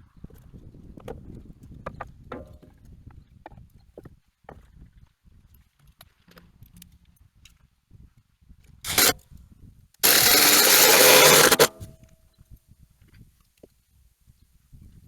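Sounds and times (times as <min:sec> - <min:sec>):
power tool cutting wood: 0:08.9 - 0:09.2, 0:10.0 - 0:11.9.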